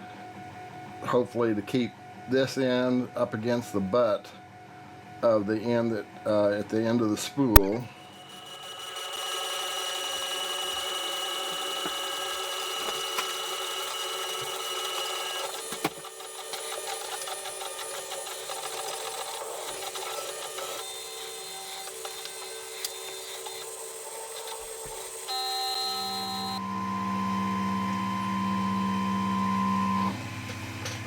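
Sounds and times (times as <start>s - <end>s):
stepper motors whining: 7.8s - 31.0s.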